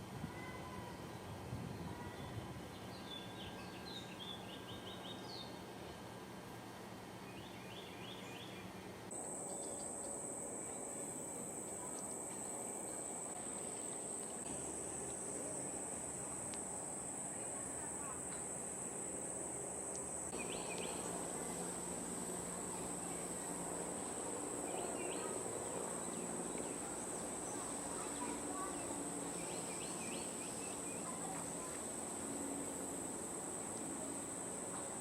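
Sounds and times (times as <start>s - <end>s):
high-pitched insect drone: 9.1s - 35.0s.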